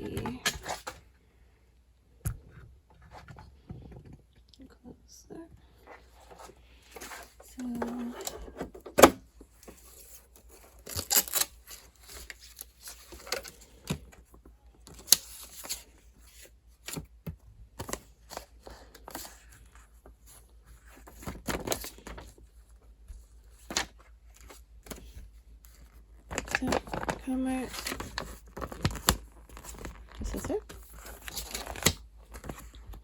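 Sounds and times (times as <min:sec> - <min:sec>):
packaging rustling and tearing: 0:23.6 - 0:33.0.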